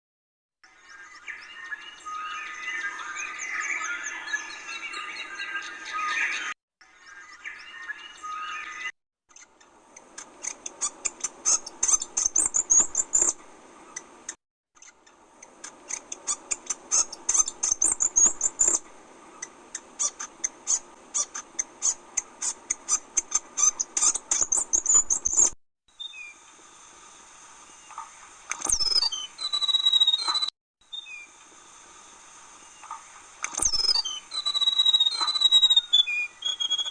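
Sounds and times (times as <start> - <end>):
high clicking chirps: 7.8 - 36.9.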